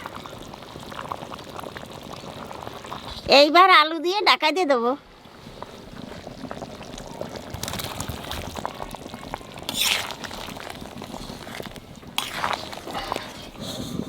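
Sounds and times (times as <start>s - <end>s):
curry bubbling in a pot: 0.0s - 3.9s, 5.1s - 14.0s
liquid splash: 9.6s - 13.5s.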